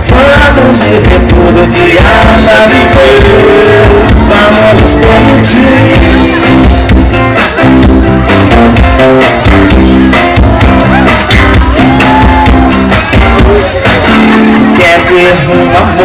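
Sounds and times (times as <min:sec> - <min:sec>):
loud pop music: 0:00.0 - 0:16.0.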